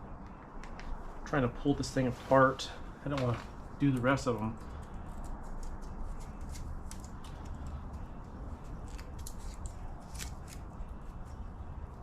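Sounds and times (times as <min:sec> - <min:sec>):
sticky strings peeled apart crackling: 0:03.2 - 0:11.4.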